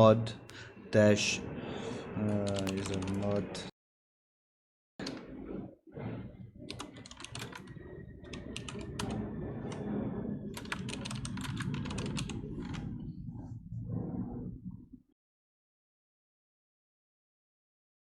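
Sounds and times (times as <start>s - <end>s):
typing on computer keyboard: 2.5s - 3.3s, 6.7s - 7.7s, 8.3s - 9.2s, 10.6s - 12.8s.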